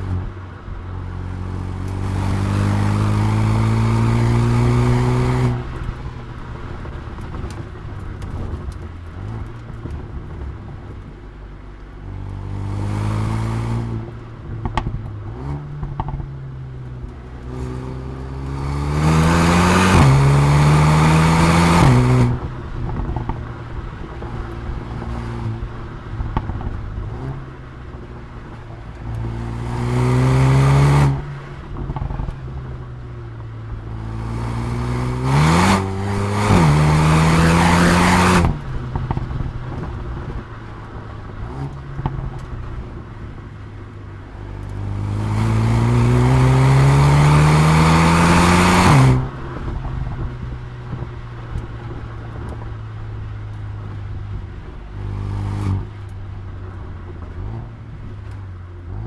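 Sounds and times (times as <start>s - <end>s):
exhaust pops and crackles: 0.0s - 59.0s
car engine revving hard: 1.2s - 9.9s, 12.3s - 16.2s, 17.0s - 23.5s, 28.5s - 32.3s, 33.9s - 43.0s, 44.6s - 50.2s, 55.0s - 56.0s.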